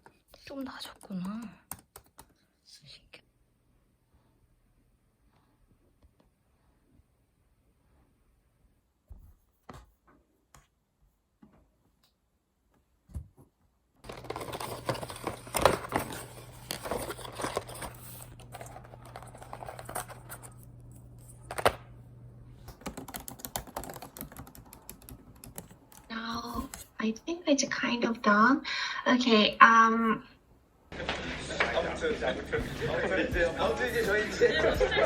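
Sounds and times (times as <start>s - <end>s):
typing on laptop keyboard: 0.8s - 2.4s, 22.7s - 26.8s
low steady hum: 14.0s - 23.2s.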